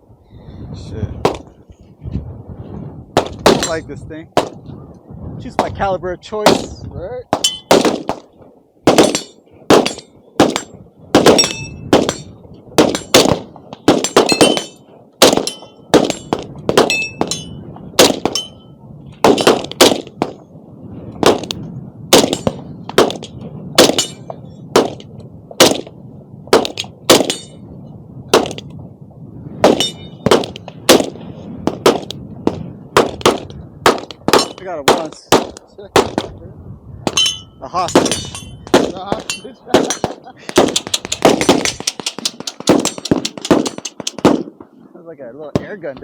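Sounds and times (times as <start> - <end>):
gunshots: 1.2 - 1.5, 3.2 - 4.6, 6.4 - 18.5, 19.2 - 20.4, 21.2 - 27.6, 28.3 - 28.7, 29.6 - 36.3, 37.9 - 44.7
bullets pinging on steel targets: 7.4 - 8.0, 8.9 - 18.7, 22.2 - 25.8, 26.6 - 27.6, 29.7 - 30.6, 33.9 - 35.1, 37.1 - 44.4.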